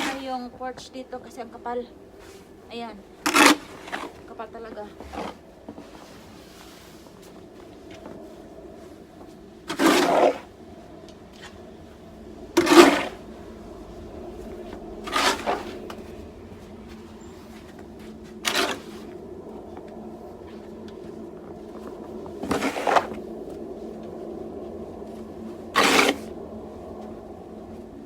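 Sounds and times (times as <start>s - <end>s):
snow shovel scraping snow: 0.0s - 0.5s, 2.2s - 7.4s, 9.6s - 10.6s, 12.6s - 13.6s, 14.4s - 19.2s, 21.8s - 23.6s, 25.6s - 26.4s.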